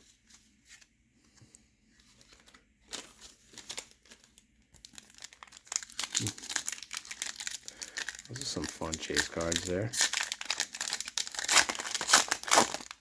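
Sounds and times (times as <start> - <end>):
foil wrapper crinkling: 2.2 - 13.0.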